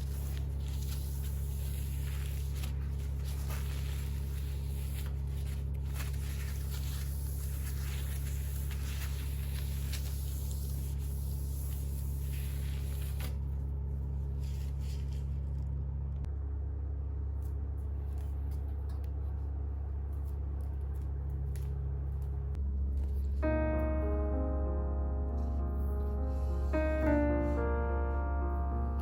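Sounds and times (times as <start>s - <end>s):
steady low rumble: 12.3s - 29.0s.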